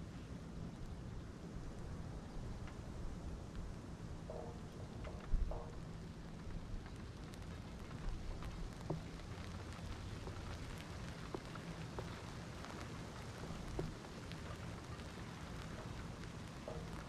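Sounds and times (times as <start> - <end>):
light ticks: 4.3 - 17.0.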